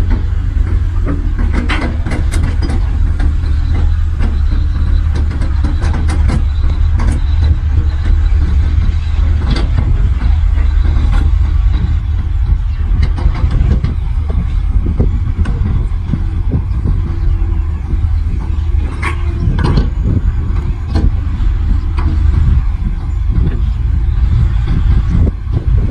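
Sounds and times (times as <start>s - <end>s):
diesel engine rumbling: 0.0s - 25.9s
metallic clanks and knocks: 0.0s - 25.9s.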